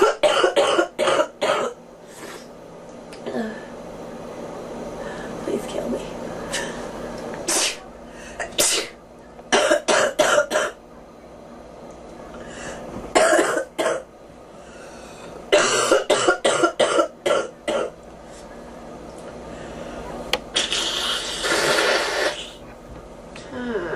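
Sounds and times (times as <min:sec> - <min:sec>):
girl coughing: 0:00.0 - 0:01.8, 0:08.4 - 0:10.8, 0:13.1 - 0:14.1, 0:15.5 - 0:18.0.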